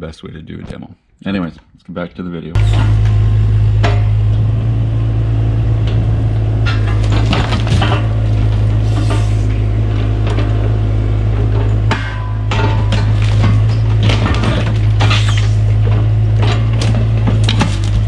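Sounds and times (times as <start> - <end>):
excavator diesel engine running: 2.6 - 18.0
wood cracking and splintering: 5.9 - 18.0.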